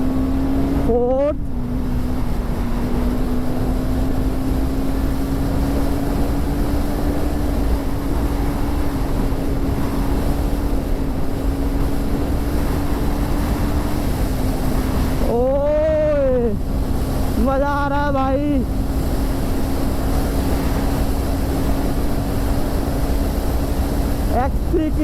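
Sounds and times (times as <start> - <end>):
motorcycle engine cruising: 0.0 - 25.0
wind rush on microphone: 0.0 - 25.0.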